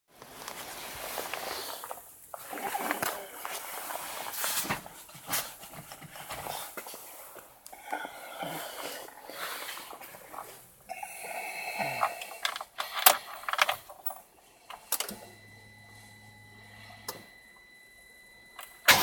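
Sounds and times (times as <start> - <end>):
rustling handling noise: 0.1 - 7.7, 8.4 - 10.9
low hum with high whine: 13.5 - 19.0.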